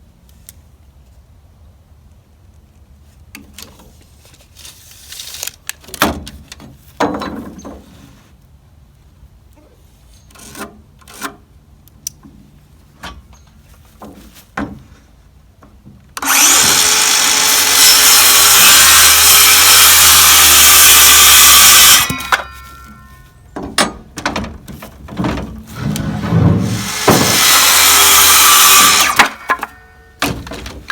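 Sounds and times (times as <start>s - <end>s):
power saw cutting wood: 16.2s - 22.6s, 25.7s - 30.6s
boards knocking: 23.6s - 30.9s.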